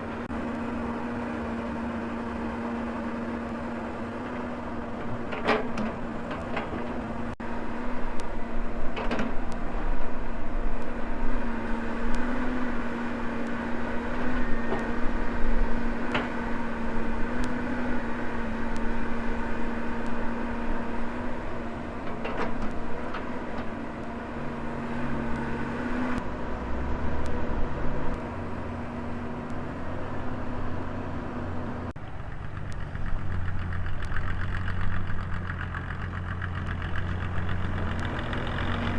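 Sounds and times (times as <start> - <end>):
hydraulic whine: 0.0 - 32.4
excavator diesel engine running: 0.0 - 38.9.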